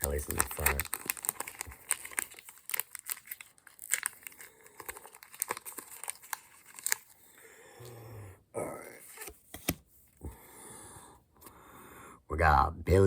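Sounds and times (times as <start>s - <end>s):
foil wrapper crinkling: 0.0s - 7.3s.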